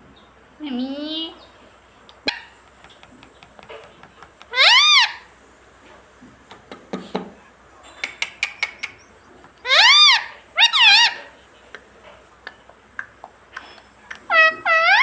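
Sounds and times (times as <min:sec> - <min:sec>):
parrot squawks: 0:02.2 - 0:02.6, 0:04.5 - 0:05.3, 0:09.6 - 0:11.3, 0:13.6 - 0:15.0.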